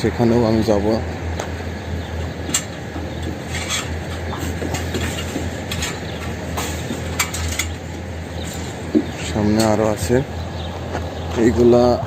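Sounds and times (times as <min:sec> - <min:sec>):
steady low hum: 0:00.0 - 0:12.0
footsteps and scraping: 0:02.4 - 0:09.8, 0:10.8 - 0:11.5.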